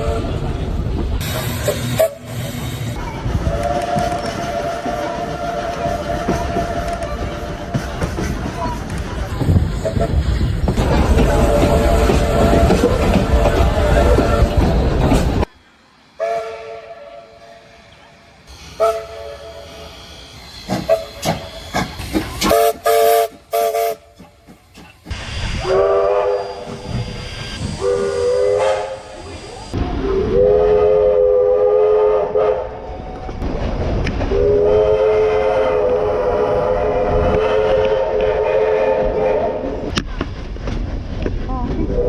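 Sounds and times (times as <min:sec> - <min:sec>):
steady steam hiss: 0:00.2 - 0:12.7, 0:13.8 - 0:31.8
steam locomotive whistle: 0:01.2 - 0:02.6, 0:03.4 - 0:07.8, 0:11.2 - 0:14.6, 0:16.2 - 0:17.9, 0:18.5 - 0:20.0, 0:20.7 - 0:24.1, 0:25.5 - 0:29.3, 0:30.1 - 0:33.2, 0:34.3 - 0:39.8.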